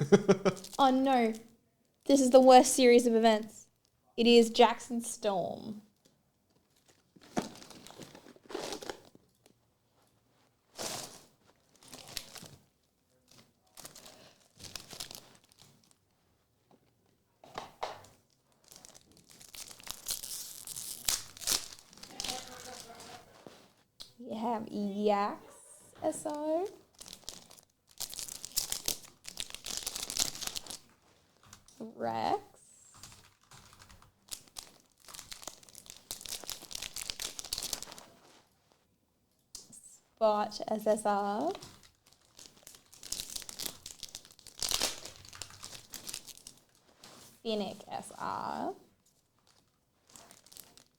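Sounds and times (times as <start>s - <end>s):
foil wrappers crinkling and tearing: 6.0s - 9.4s, 10.7s - 16.1s, 18.2s - 23.8s, 26.3s - 31.7s, 32.8s - 38.8s, 41.4s - 47.4s, 48.9s - 50.9s.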